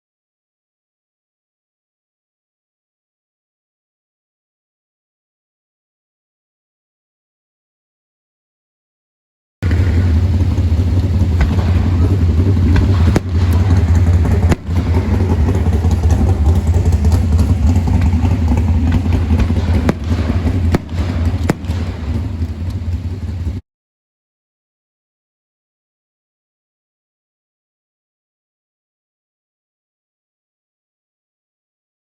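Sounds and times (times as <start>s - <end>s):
fireworks bangs: 9.6s - 23.6s
low rumble: 9.6s - 23.6s.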